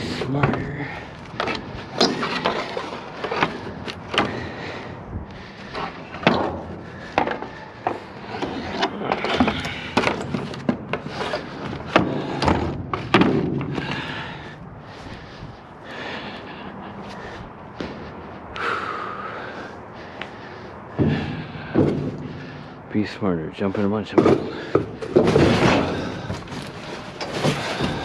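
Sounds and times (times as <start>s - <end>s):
scrap metal knocks and clanks: 5.5s - 14.6s, 20.9s - 22.8s, 24.0s - 28.0s.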